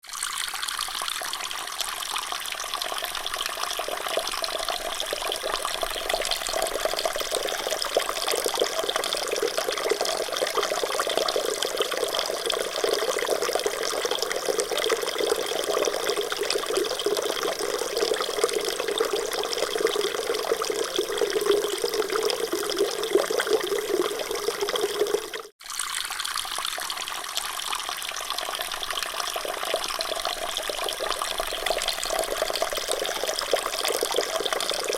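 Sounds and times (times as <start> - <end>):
water running: 15.3 - 25.6.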